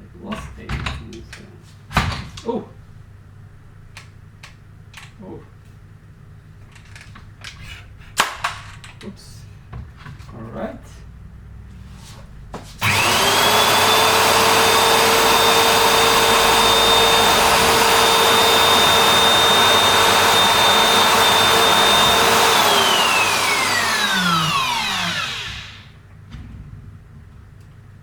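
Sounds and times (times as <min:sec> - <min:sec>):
router motor whining: 0:12.8 - 0:25.9.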